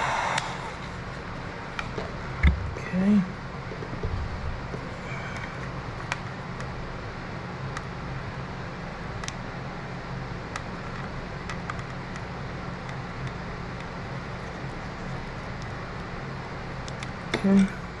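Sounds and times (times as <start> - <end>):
low machine hum: 0.0 - 18.0
light clicks of small parts: 9.2 - 9.4, 16.8 - 17.5.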